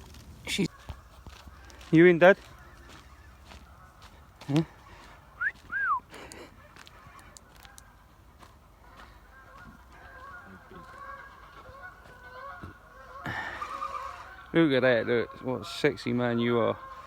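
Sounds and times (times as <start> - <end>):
flock of geese honking: 0.6 - 5.2, 6.4 - 17.0
goose calls: 8.8 - 17.0.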